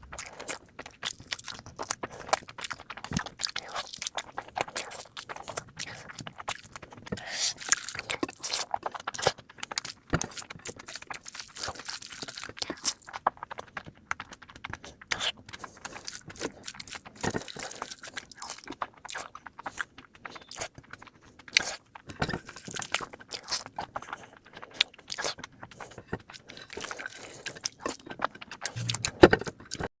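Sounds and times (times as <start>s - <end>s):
crunching and chewing: 0.0s - 29.0s
wet mouth clicks: 28.8s - 29.2s.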